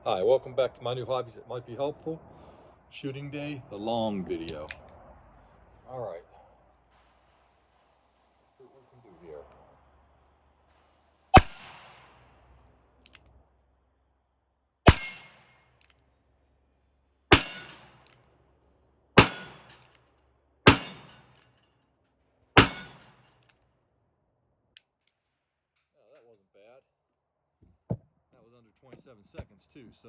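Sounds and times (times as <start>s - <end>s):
echoing gunshots: 10.1s - 12.8s, 14.9s - 15.7s, 17.3s - 18.1s, 19.2s - 20.0s, 20.7s - 21.4s, 22.6s - 23.3s.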